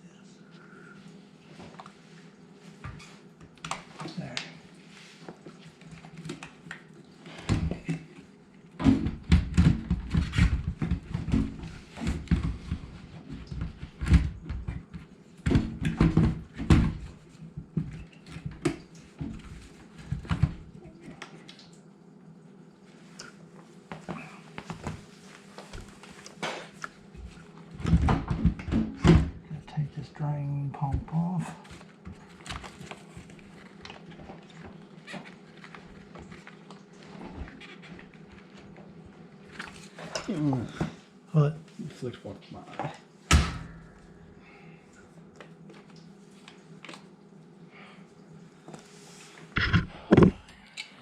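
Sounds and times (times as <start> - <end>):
knocks and thumps of parts: 49.6 - 50.4.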